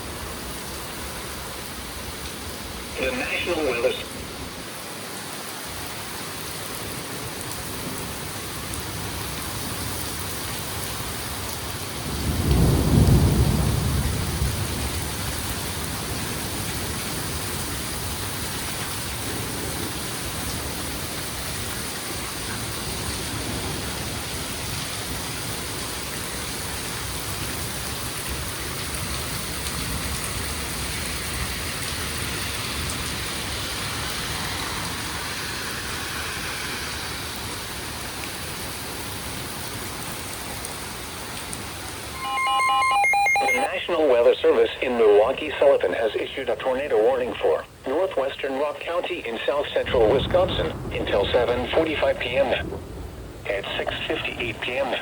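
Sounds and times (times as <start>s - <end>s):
rain hissing: 0.0s - 42.3s, 43.6s - 55.0s
thunder rumble: 11.9s - 17.8s, 29.8s - 39.5s, 49.8s - 55.0s.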